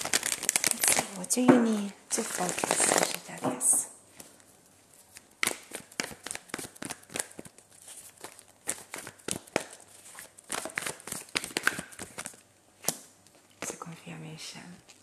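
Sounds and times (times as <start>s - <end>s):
cards being shuffled: 2.1s - 3.4s, 5.0s - 13.0s.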